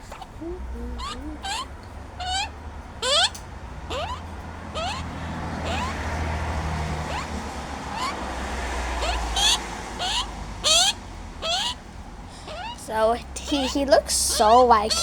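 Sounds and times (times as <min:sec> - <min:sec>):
low continuous rumble: 0:00.0 - 0:15.0
animal upward-sliding calls: 0:04.8 - 0:11.8.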